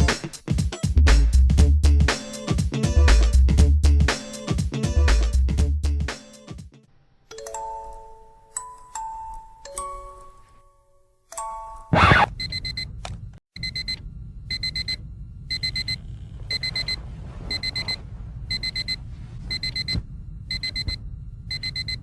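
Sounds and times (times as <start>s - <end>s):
digital alarm clock beeping: 11.9s - 12.9s, 13.6s - 19.0s, 19.6s - 22.0s
low rumble: 16.2s - 21.5s.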